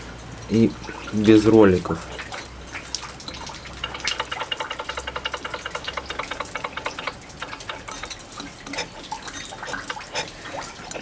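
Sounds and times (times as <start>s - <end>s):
rapid metallic clicking of engine: 2.8s - 11.0s.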